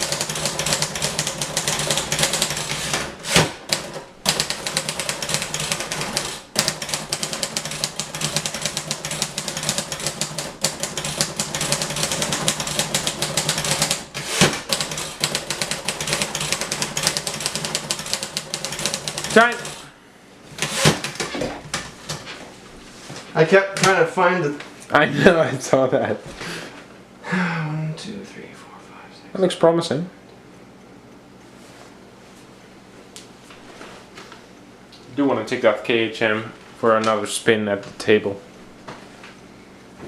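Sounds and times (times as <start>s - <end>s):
typewriter key clatter: 0.0s - 19.8s
loud typewriter clack: 0.0s - 19.9s, 20.6s - 21.4s.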